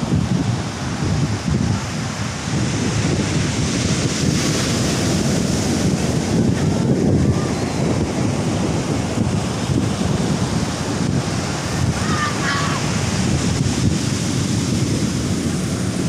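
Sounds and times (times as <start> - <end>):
ocean surf breaking: 0.0 - 16.0
wind buffeting microphone: 0.0 - 16.0.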